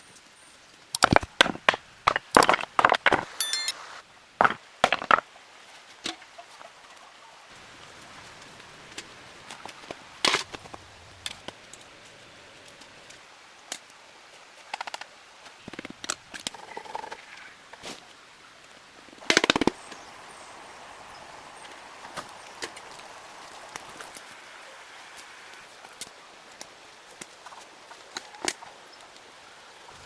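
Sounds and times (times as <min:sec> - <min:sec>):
rain hissing: 0:00.0 - 0:05.7, 0:07.4 - 0:30.0
rapid crackle of wood: 0:00.1 - 0:30.0
wood cracking and knocking: 0:01.0 - 0:03.3, 0:04.4 - 0:05.2.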